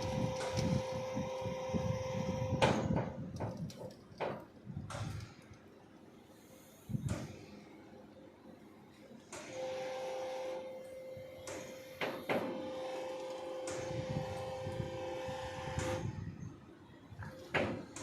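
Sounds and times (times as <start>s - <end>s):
concreting machine whining: 0.0s - 3.1s.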